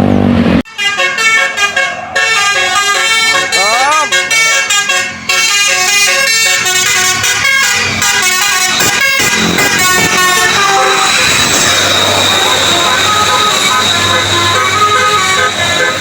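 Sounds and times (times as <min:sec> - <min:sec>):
multi-tone bus air horn tune: 0:00.7 - 0:16.0
noisy wash: 0:06.5 - 0:16.0.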